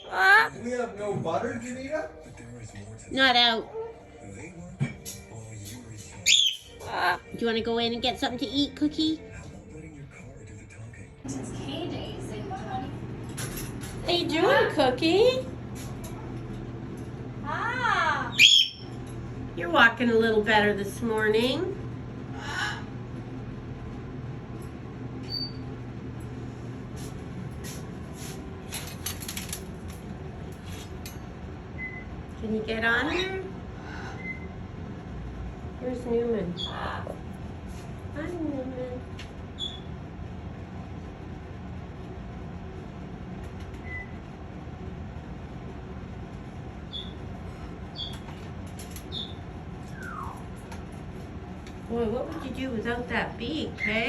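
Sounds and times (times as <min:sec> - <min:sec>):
low room hum: 0:00.0 - 0:54.0
parrot peeping: 0:06.2 - 0:07.5, 0:18.2 - 0:19.1, 0:25.2 - 0:25.8, 0:31.8 - 0:32.1, 0:33.0 - 0:34.6, 0:36.4 - 0:37.4, 0:39.5 - 0:40.0, 0:43.7 - 0:44.2, 0:46.8 - 0:50.7, 0:53.7 - 0:54.0.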